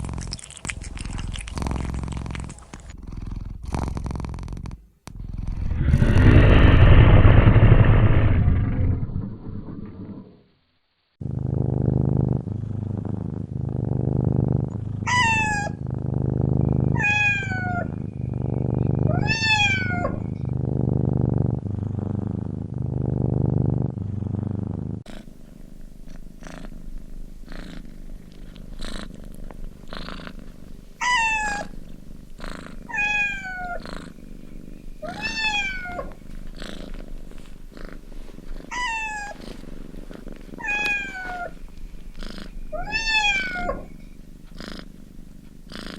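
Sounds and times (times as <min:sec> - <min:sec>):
cat purring loudly: 0:00.0 - 0:10.4, 0:11.2 - 0:45.9
kitten meowing: 0:15.1 - 0:15.8, 0:19.1 - 0:20.2, 0:31.0 - 0:31.7, 0:32.9 - 0:33.8, 0:35.0 - 0:36.1, 0:38.7 - 0:39.4, 0:40.6 - 0:41.6, 0:42.8 - 0:43.9.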